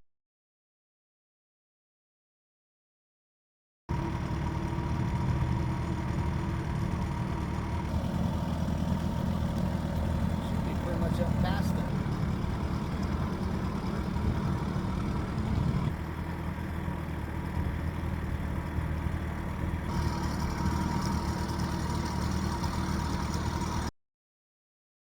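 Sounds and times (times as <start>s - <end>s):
boat motor running: 3.9s - 23.9s.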